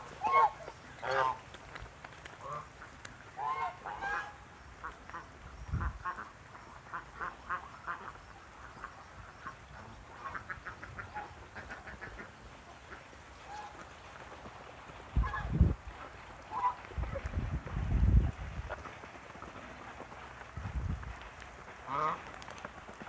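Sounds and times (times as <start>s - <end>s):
geese honking: 0.1s - 1.4s.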